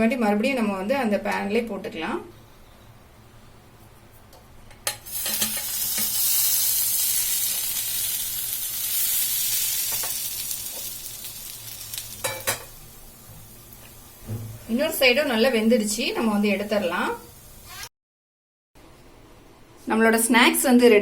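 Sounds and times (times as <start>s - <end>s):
sizzling frying: 4.8s - 17.9s.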